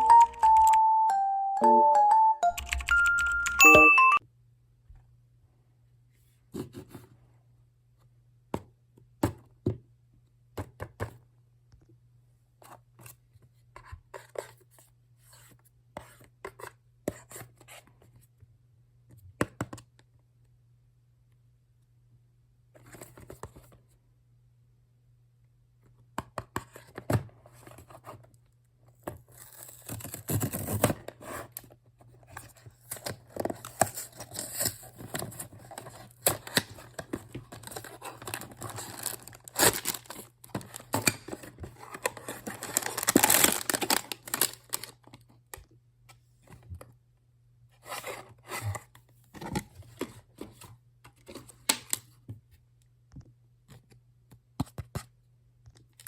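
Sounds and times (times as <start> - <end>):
packaging tearing and crinkling: 33.0 - 45.0.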